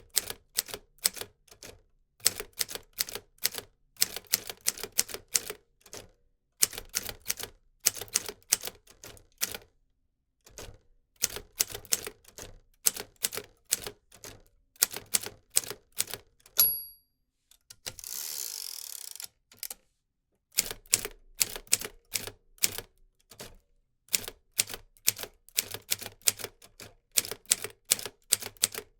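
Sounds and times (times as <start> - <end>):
typewriter margin bell ring: 16.6 - 17.0.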